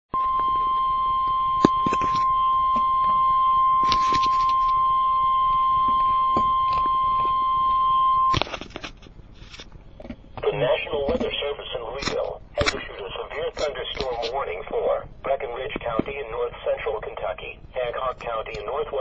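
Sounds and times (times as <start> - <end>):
clicks and crackles: 0.2 - 3.2, 3.8 - 4.8, 5.8 - 14.4, 18.1 - 18.8.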